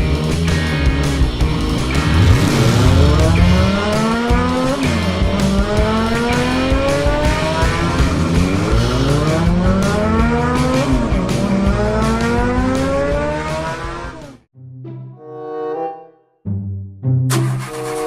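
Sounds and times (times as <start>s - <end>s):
racing car engine accelerating: 0.3s - 14.4s.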